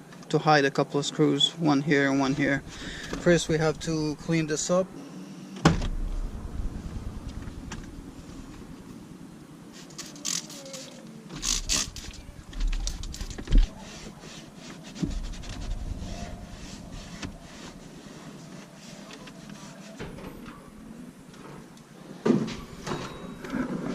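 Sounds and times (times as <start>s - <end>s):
rubbing on plastic: 9.7s - 20.3s.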